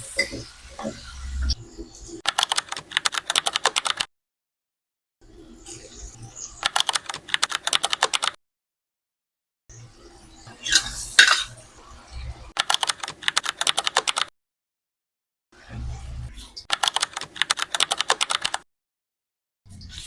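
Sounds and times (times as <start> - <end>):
rapid keyboard-like clicking: 2.2 - 4.1, 6.6 - 8.4, 12.6 - 14.3, 16.7 - 18.6.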